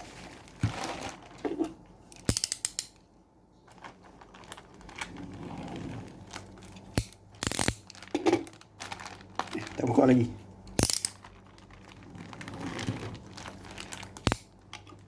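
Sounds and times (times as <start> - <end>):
cardboard parcel rustling: 0.0 - 2.1, 3.6 - 15.0
ratchet-like clicks: 2.2 - 3.0.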